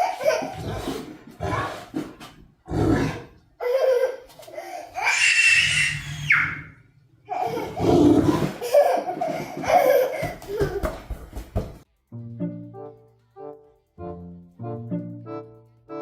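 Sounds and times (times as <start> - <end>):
high-pitched cry: 3.6 - 7.8
people laughing hard: 7.4 - 11.1.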